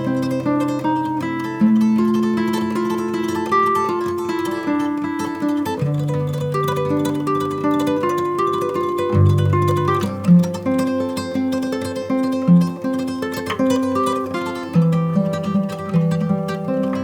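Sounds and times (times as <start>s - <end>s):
plucked string tune with bass: 7.9s - 11.3s.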